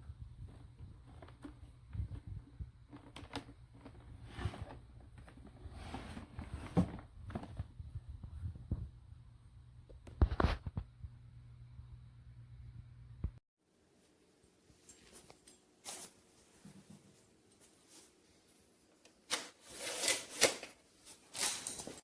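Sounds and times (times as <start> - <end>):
objects being handled: 0.1 - 8.9.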